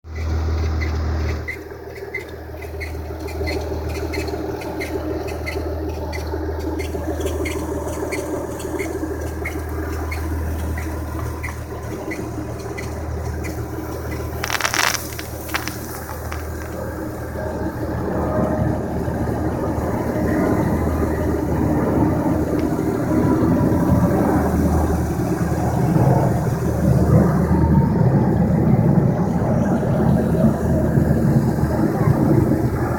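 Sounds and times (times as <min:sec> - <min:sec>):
drive belt squeaking: 0:00.1 - 0:16.8
loud noisy burst: 0:14.4 - 0:16.9.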